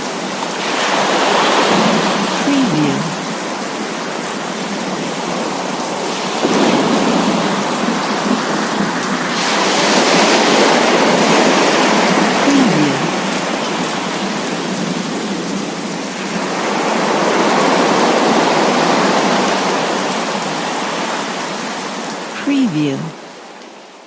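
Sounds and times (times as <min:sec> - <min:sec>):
rain falling: 0:03.0 - 0:10.3.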